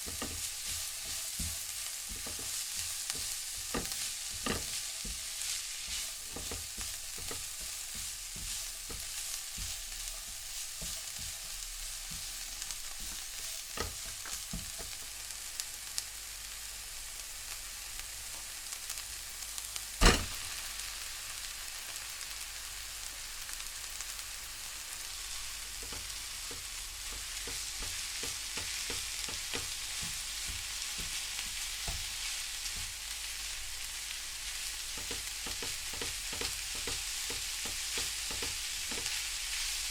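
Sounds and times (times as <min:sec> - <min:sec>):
food sizzling in a pan: 0:00.0 - 0:39.9
sharp knock: 0:20.0 - 0:20.4.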